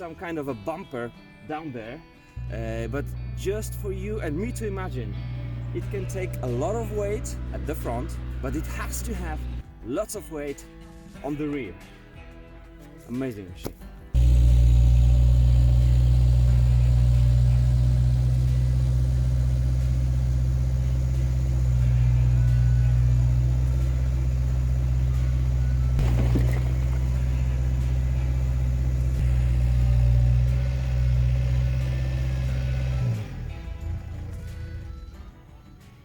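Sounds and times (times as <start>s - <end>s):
diesel engine rumbling: 2.4s - 9.6s, 14.2s - 35.2s.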